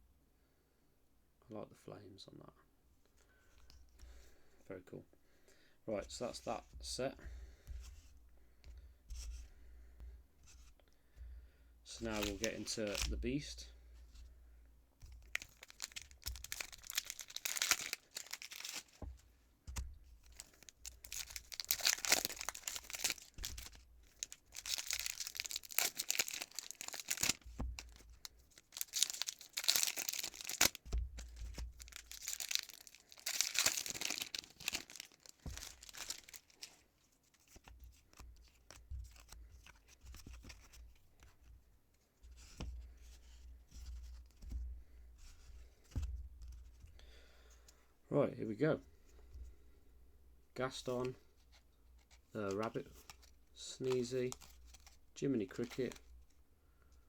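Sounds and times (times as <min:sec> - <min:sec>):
foil wrapper tearing and crinkling: 0:11.9 - 0:13.2, 0:15.2 - 0:19.0, 0:20.2 - 0:36.8.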